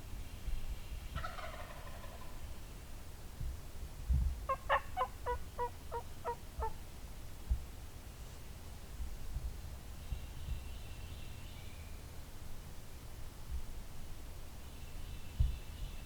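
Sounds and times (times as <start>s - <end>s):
turkey gobbling: 1.2s - 2.3s, 4.5s - 6.8s
turkey rattling call: 1.2s - 2.3s, 4.5s - 6.7s
turkey yelps: 4.5s - 6.8s.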